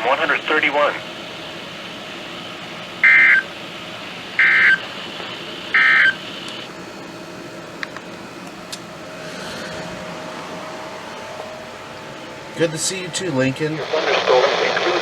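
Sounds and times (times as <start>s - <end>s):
faint radio hiss: 0.0s - 1.0s, 12.7s - 15.0s
buzzy two-tone digital chirps: 5.8s - 6.2s.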